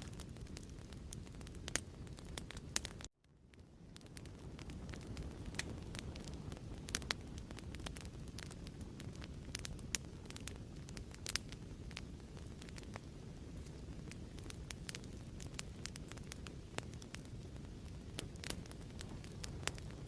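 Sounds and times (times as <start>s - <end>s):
low rumble of flames: 0.0s - 20.0s
wood fire crackling and popping: 0.0s - 20.0s.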